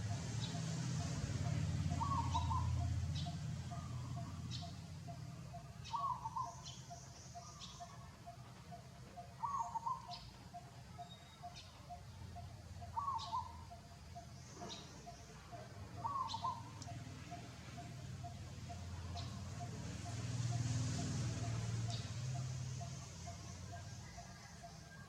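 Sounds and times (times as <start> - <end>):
faint steady ticking: 0.0 - 24.9
bird warbling call: 0.1 - 24.8.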